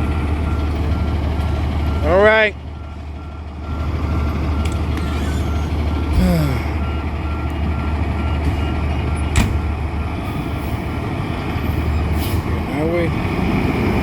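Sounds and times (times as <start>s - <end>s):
reversing alarm beeping: 0.0s - 10.9s
engine idling rumble: 0.0s - 13.2s.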